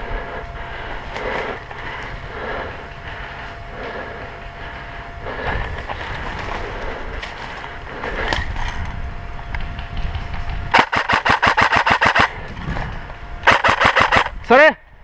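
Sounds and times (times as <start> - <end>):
low rumble of handling: 0.0 - 10.8, 12.2 - 13.5
rapid sharp pulses: 9.2 - 14.6.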